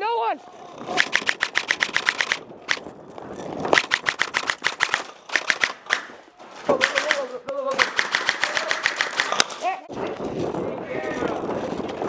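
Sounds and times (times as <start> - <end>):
airsoft gun bursts: 0.9 - 2.8, 3.7 - 9.6.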